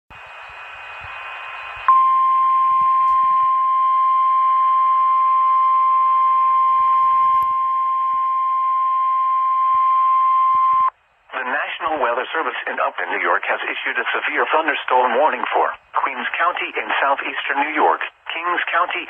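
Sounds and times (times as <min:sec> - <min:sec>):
steady loud alarm tone: 0:00.9 - 0:10.9.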